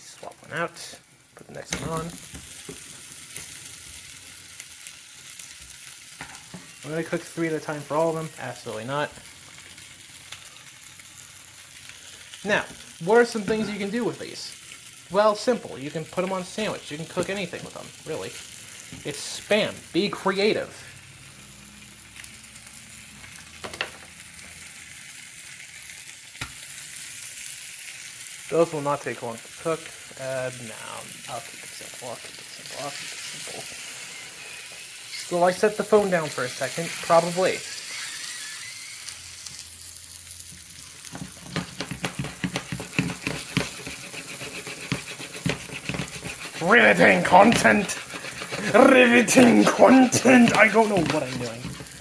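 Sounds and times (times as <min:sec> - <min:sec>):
meat sizzling in a frying pan: 0:00.0 - 0:52.0
crackling pops: 0:40.5 - 0:44.0.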